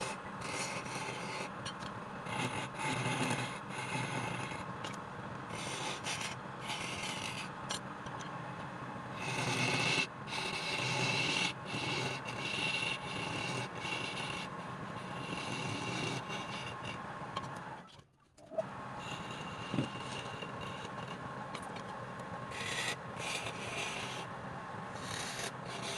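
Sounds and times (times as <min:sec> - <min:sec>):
tool rasping against wood: 0:00.0 - 0:01.5, 0:02.3 - 0:04.7, 0:05.5 - 0:07.5, 0:09.2 - 0:17.0, 0:19.0 - 0:21.8, 0:22.5 - 0:24.3, 0:24.9 - 0:25.9.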